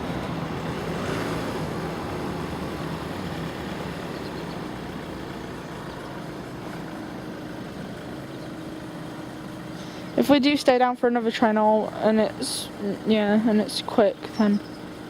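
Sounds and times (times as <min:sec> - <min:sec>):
diesel train passing: 0:00.0 - 0:15.0.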